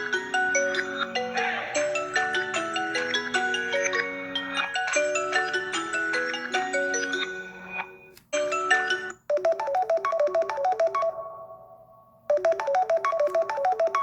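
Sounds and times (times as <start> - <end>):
phone ringtone melody: 0.0 - 14.0.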